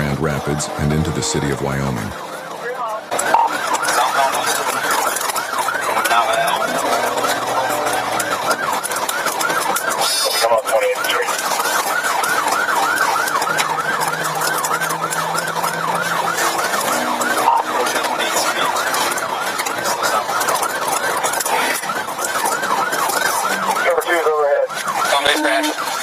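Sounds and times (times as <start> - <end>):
police siren yelping: 0.0 - 26.0
road noise: 0.0 - 26.0.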